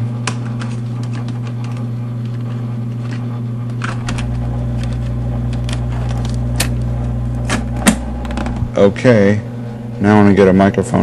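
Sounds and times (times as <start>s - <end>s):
slide projector humming: 0.0s - 11.0s.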